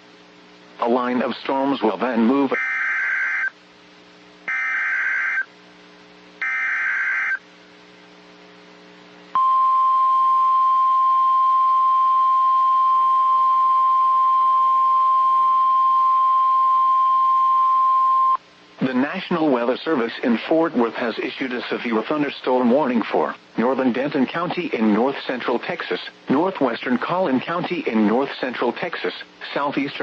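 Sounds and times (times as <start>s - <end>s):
steady alarm tone: 2.5s - 3.6s, 4.5s - 5.5s, 6.4s - 7.4s.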